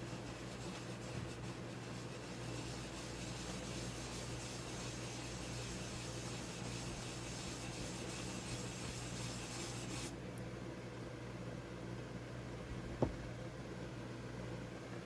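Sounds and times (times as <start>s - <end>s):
sanding rubbing hiss: 0.0s - 10.1s
low steady hum: 0.0s - 15.0s.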